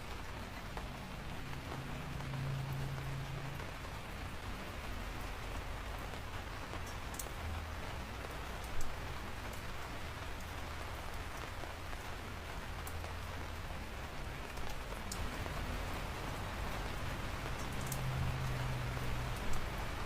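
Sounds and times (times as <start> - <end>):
steady rain falling: 0.0 - 20.0.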